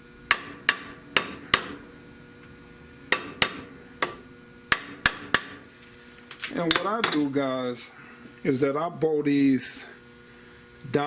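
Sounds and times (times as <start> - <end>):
hammer tapping metal washers: 3.1 - 5.6, 6.4 - 7.3.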